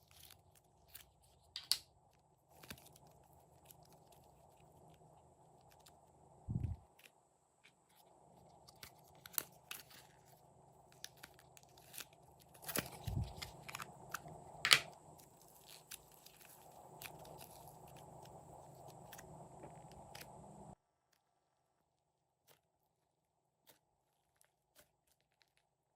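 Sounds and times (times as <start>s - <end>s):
slime crackling and popping: 8.6s - 20.7s.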